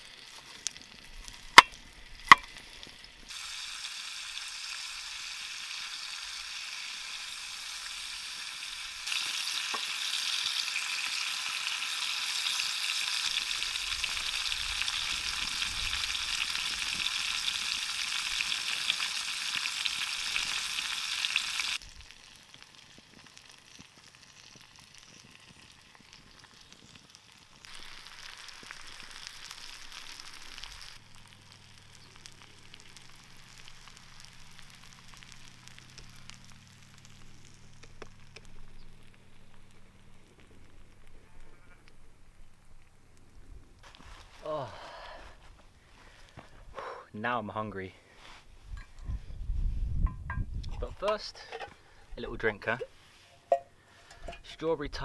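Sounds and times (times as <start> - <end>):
food sizzling in a pan: 0.0 - 42.8.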